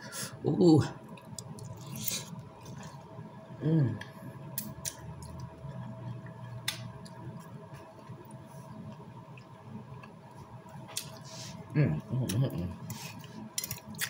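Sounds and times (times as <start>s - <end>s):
person chewing food: 1.1s - 3.1s
person humming mmm: 3.6s - 4.2s, 11.7s - 13.0s.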